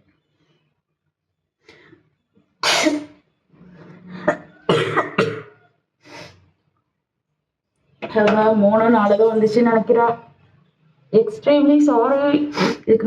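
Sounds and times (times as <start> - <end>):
woman coughing: 2.6 - 3.1, 4.4 - 5.6.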